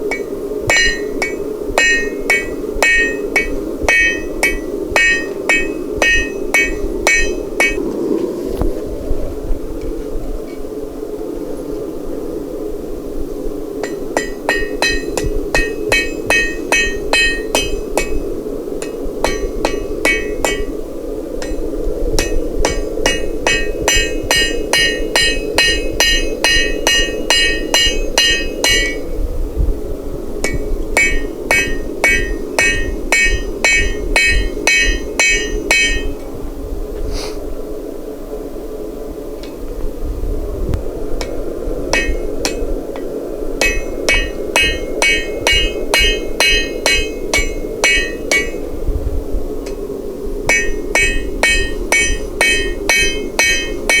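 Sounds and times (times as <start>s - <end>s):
low rushing noise: 0.0s - 54.0s
hammer striking steel on anvil: 0.1s - 7.8s, 13.8s - 20.8s, 22.2s - 29.1s, 30.4s - 36.2s, 41.2s - 42.7s, 43.6s - 48.7s, 50.5s - 54.0s.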